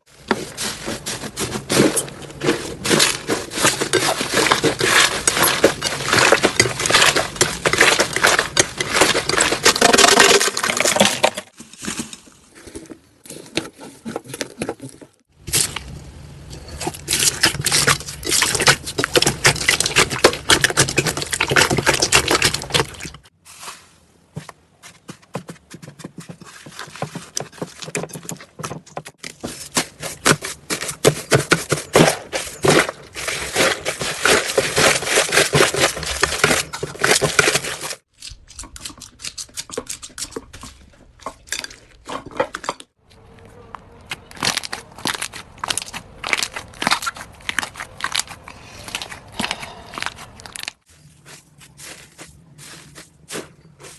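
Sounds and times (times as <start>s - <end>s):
slime squishing and crackling: 44.0s - 52.9s.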